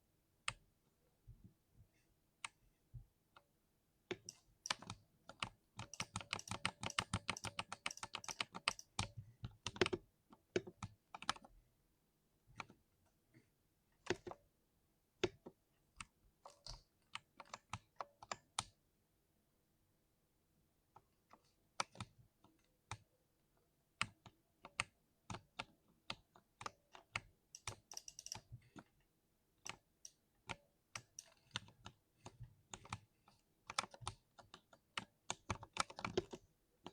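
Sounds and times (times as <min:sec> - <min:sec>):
mechanical keyboard typing: 0:04.1 - 0:11.4, 0:24.0 - 0:28.8, 0:29.6 - 0:36.9.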